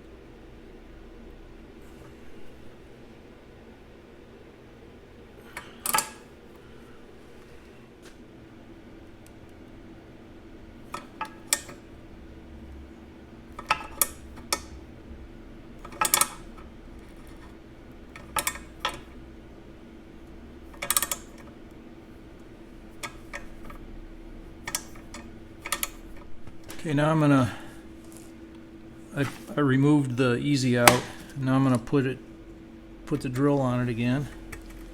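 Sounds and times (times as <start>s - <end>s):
steady low hum: 0.0s - 34.9s
metal tools clinking and tapping: 15.8s - 16.6s, 20.7s - 21.5s.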